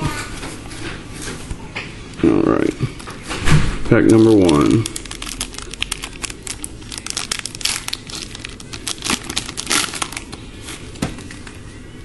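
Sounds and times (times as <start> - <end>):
card pack wrapper crinkling and tearing: 4.1 - 10.8.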